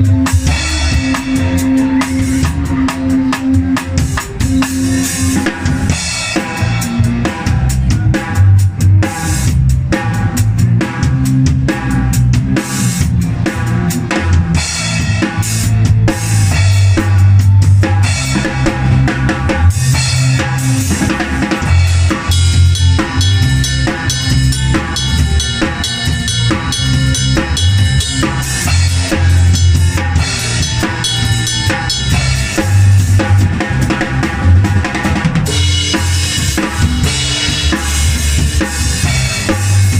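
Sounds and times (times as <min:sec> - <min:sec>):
drum kit beat: 0:00.0 - 0:39.9
sustained bass notes: 0:00.0 - 0:39.9
held chords: 0:18.0 - 0:38.2
cymbals: 0:19.8 - 0:34.4.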